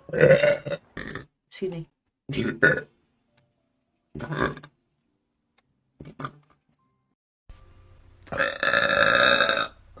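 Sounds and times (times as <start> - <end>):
man burping: 0.1 - 1.3, 8.4 - 9.8.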